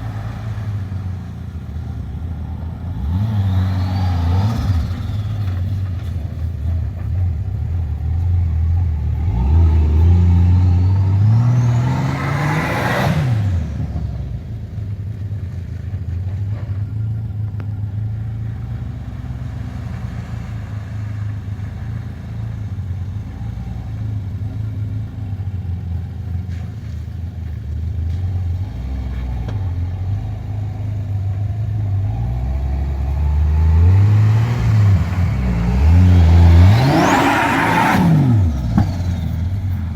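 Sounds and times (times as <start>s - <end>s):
engine revving: 0.0s - 14.6s, 27.8s - 39.9s.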